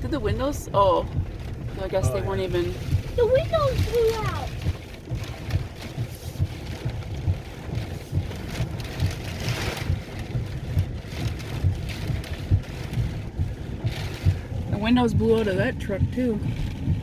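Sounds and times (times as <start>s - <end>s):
wind buffeting microphone: 0.0s - 17.0s
wind-driven rain hiss: 0.0s - 17.0s.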